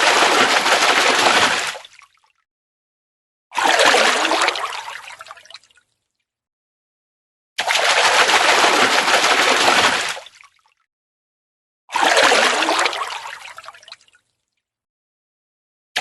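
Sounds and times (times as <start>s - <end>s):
fish splashing at water surface: 0.0s - 2.2s, 7.6s - 10.6s.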